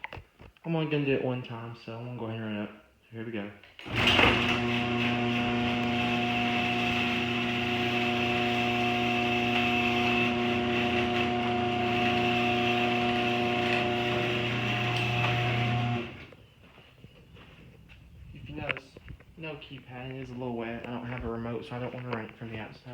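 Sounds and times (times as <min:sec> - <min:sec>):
garage door opener motor hum: 0:03.8 - 0:16.4.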